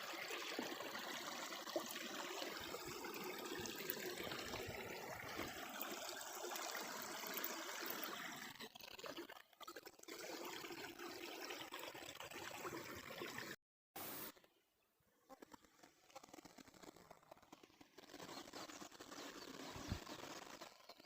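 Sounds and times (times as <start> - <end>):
brook babbling: 0.0 - 13.6.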